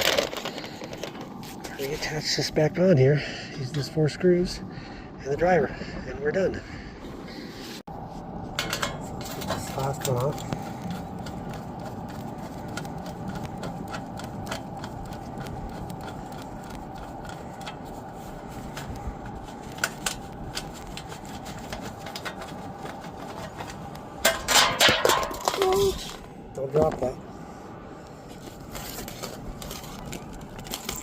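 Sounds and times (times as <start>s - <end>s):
steady background hum: 0.0s - 31.0s.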